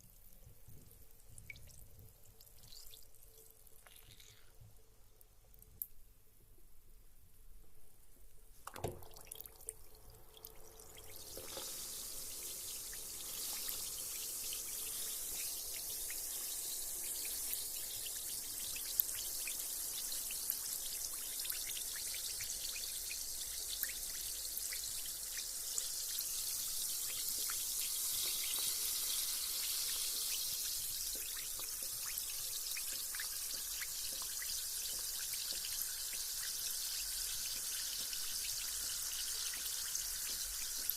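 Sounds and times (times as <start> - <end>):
bath bomb fizzing: 3.7 - 4.6, 10.3 - 40.9.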